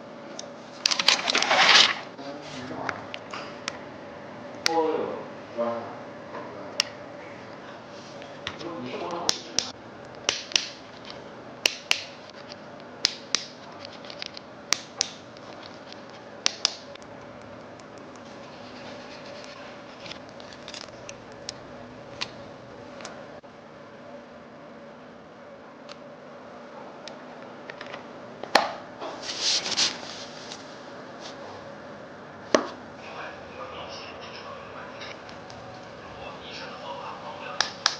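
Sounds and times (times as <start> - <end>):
faint steady hum: 0.0 - 37.9
scratchy rustle: 18.3 - 20.2, 29.2 - 31.4.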